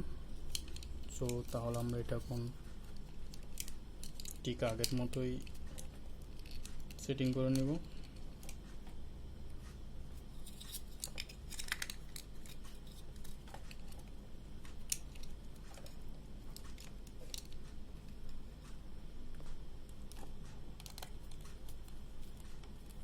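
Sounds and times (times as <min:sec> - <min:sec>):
hands handling plastic parts: 0:10.4 - 0:14.0.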